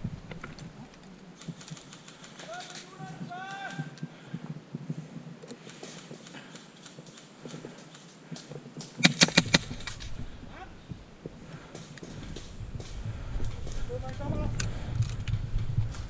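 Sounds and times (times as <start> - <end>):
airsoft gun snaps: 9.0 - 10.1.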